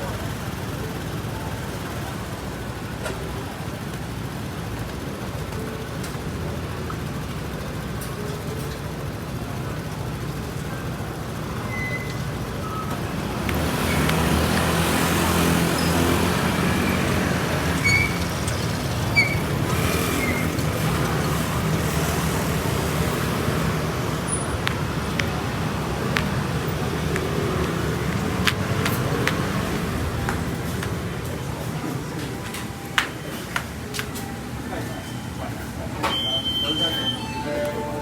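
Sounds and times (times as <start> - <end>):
road noise: 0.0 - 38.0
vehicle engine passing: 12.8 - 32.1.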